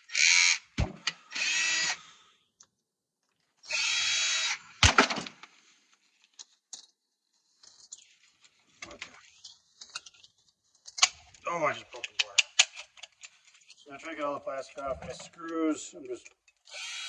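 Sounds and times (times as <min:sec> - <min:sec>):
power screwdriver whirring: 0:01.3 - 0:02.0, 0:03.7 - 0:04.6, 0:16.7 - 0:17.0.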